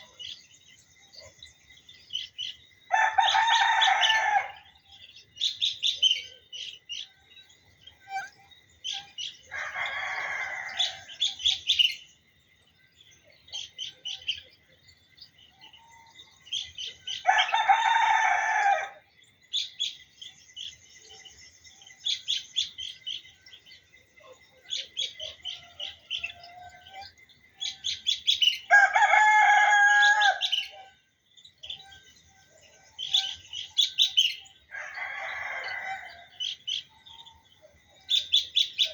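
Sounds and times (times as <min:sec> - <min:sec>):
songbirds chirping: 0:00.0 - 0:38.9
rooster crowing: 0:02.9 - 0:04.8, 0:09.5 - 0:11.2, 0:17.2 - 0:19.1, 0:28.7 - 0:30.7, 0:34.7 - 0:36.5.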